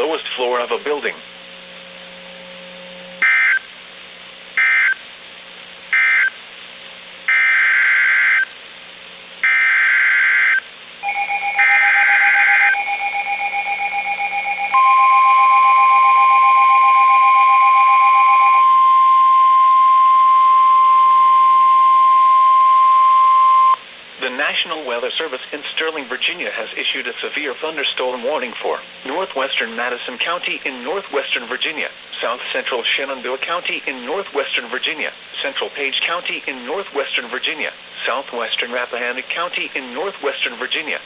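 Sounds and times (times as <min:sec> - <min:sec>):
steady warning alarm tone: 0:09.4 - 0:23.8
pulsing electronic alarm beep: 0:09.5 - 0:23.8.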